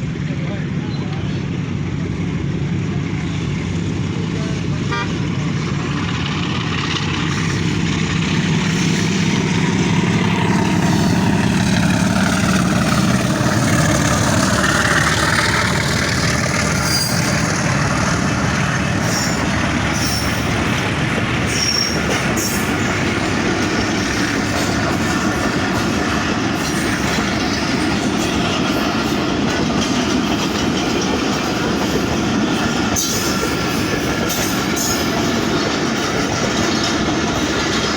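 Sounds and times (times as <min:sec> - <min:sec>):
train rumbling and rattling: 0:00.0 - 0:37.9
high wheel squeals: 0:16.5 - 0:20.8, 0:21.4 - 0:23.0.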